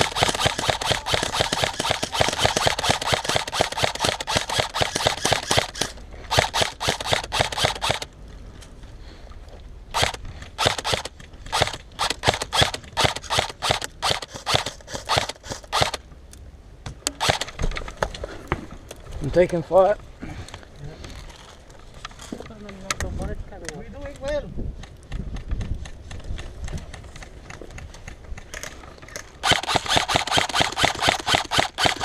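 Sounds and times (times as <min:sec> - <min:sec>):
airsoft guns firing: 0:00.0 - 0:08.1, 0:09.9 - 0:16.0, 0:17.2 - 0:17.6, 0:29.4 - 0:32.0.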